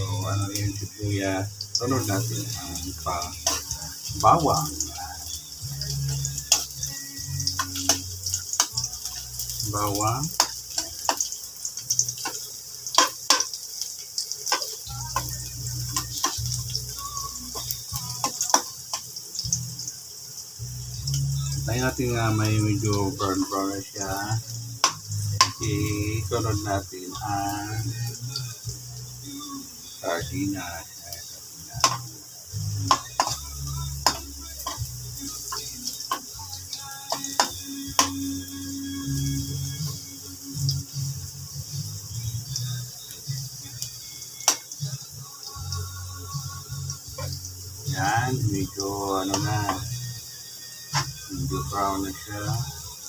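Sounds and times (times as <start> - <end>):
onion and garlic sizzling in oil: 0.0 - 53.0
utensil scraping frying pan: 7.5 - 19.1, 32.8 - 36.3.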